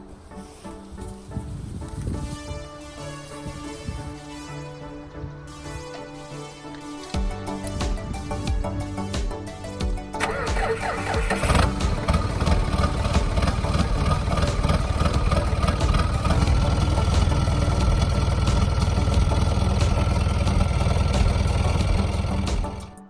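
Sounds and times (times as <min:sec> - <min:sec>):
diesel engine idling: 0:10.2 - 0:23.0.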